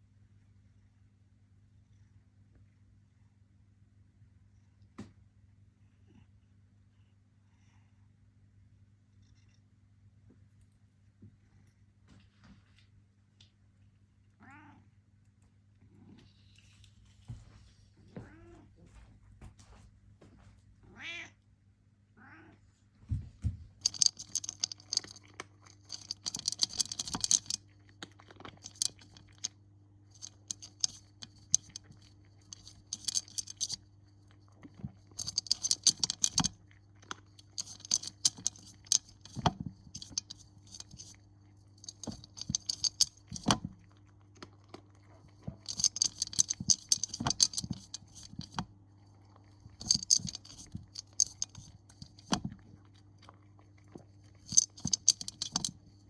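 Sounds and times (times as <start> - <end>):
faint low hum: 0.0 - 56.0
fast jingling rattles: 23.8 - 25.2, 25.8 - 27.6, 30.1 - 33.8, 35.2 - 36.5, 37.5 - 41.1, 41.8 - 43.6, 45.6 - 48.6, 49.8 - 52.4, 54.4 - 55.7.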